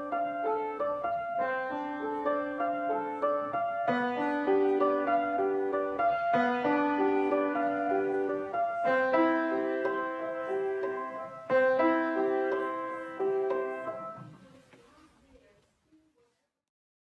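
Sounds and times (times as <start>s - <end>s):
gentle piano music: 0.0s - 14.4s.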